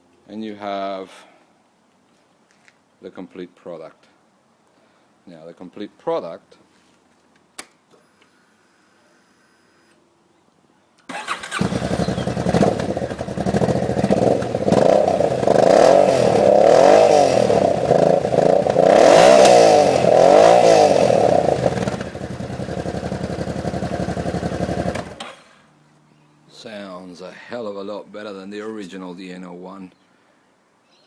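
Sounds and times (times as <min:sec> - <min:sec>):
motorcycle engine idling and revving: 0:11.1 - 0:25.6.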